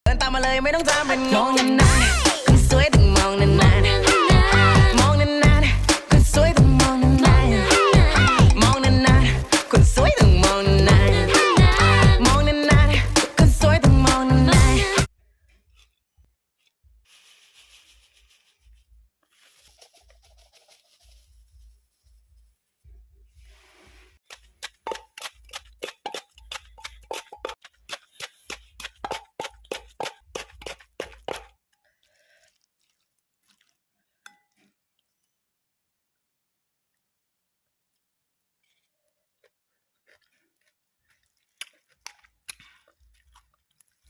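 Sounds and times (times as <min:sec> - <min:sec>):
scraping and rustling: 0:15.5 - 0:22.4
pestle pounding in a mortar: 0:24.2 - 0:31.6.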